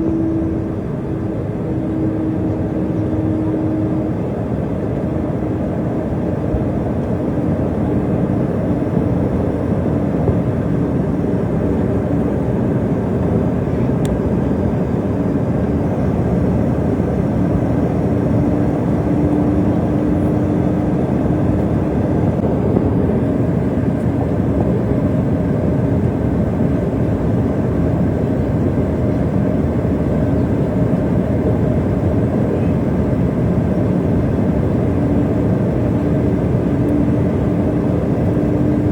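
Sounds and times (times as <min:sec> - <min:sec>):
faint steady hum: 0:00.0 - 0:07.0
jet engine and airflow noise: 0:00.0 - 0:38.9.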